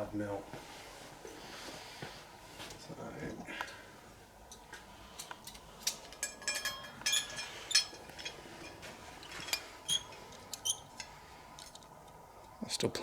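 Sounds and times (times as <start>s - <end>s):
small metal parts clinking: 5.2s - 11.9s.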